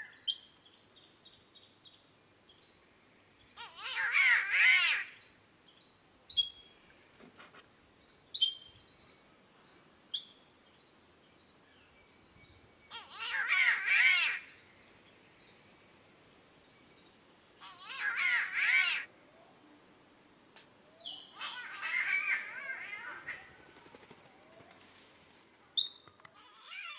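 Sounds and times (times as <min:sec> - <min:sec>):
bird wailing cat-like calls: 0:03.6 - 0:05.2, 0:12.9 - 0:14.5, 0:17.6 - 0:19.1, 0:21.0 - 0:23.9, 0:26.4 - 0:26.9.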